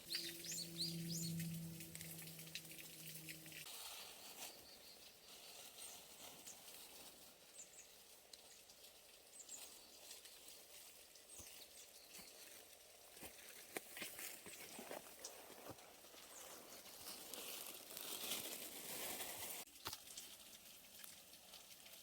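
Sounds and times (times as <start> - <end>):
faint high bird chirps: 0.0 - 3.2
small scattered ticks: 0.0 - 18.4.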